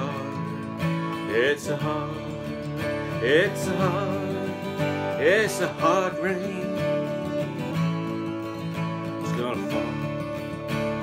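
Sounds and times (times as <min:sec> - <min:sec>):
acoustic guitar folk song: 0:00.0 - 0:11.0.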